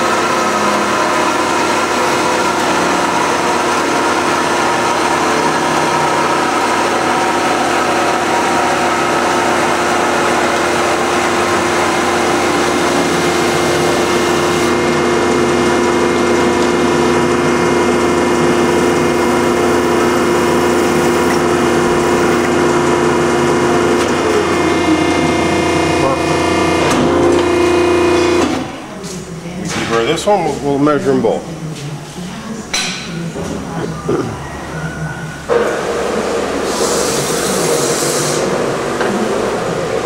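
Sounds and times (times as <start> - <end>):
band saw cutting tube: 0.0 - 28.7.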